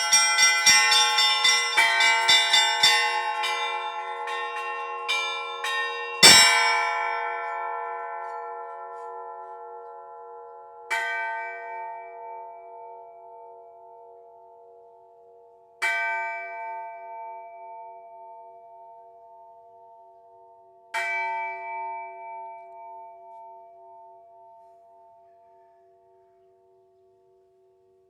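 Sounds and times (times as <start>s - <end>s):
church bell ringing: 0.0s - 19.1s.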